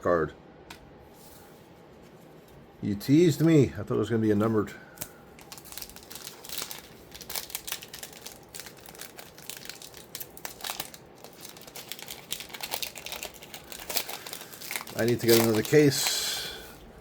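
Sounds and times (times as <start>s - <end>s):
foil wrapper crinkling and tearing: 5.0s - 16.8s.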